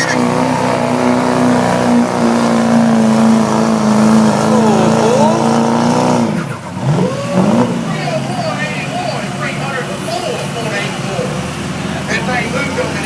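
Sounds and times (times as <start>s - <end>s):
diesel pickup engine under load: 0.0s - 13.0s.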